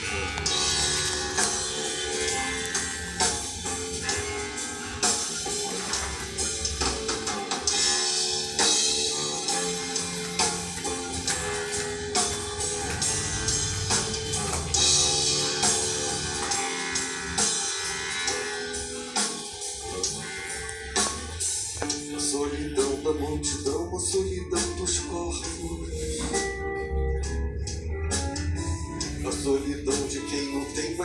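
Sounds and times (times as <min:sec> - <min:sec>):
drum kit: 0:00.0 - 0:20.2
rock guitars: 0:00.0 - 0:31.0.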